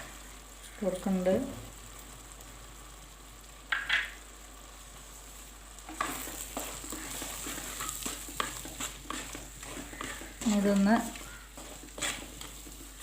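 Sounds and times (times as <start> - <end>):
masala sizzling in a pan: 0.0 - 13.0
spoon stirring and scraping: 5.8 - 13.0.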